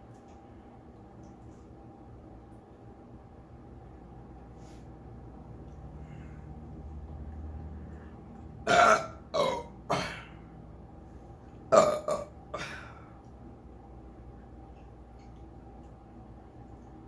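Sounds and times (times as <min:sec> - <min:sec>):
person burping loudly: 0:08.7 - 0:10.3, 0:11.7 - 0:12.9.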